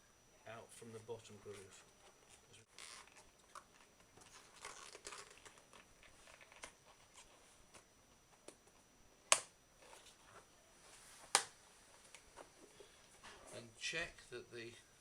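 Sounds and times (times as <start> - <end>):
rubber rubbing and crinkling: 1.5 - 7.9
sharp rubber snap: 9.3 - 9.5.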